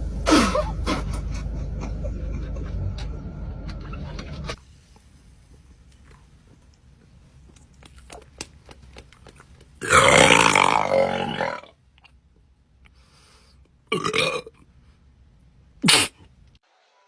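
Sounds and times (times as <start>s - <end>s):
person burping loudly: 9.8s - 11.7s, 13.9s - 14.5s.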